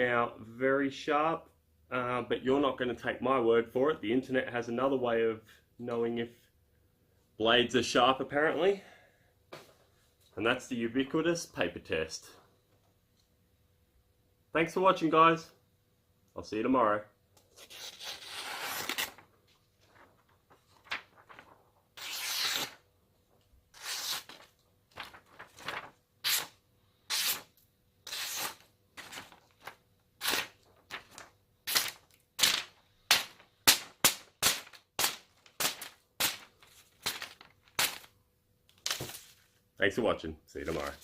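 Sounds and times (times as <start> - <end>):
knife slicing paper: 17.6 - 19.2, 20.8 - 22.8, 23.7 - 38.1.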